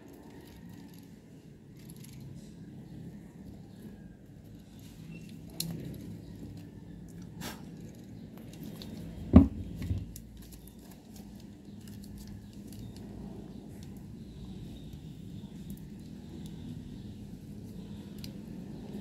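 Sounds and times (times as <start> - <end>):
rustling handling noises: 3.6 - 14.2.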